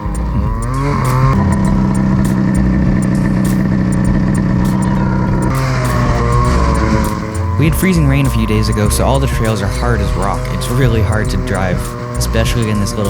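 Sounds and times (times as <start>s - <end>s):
regular sharp knocks: 0.0s - 13.0s
snowmobile engine running: 0.0s - 13.0s.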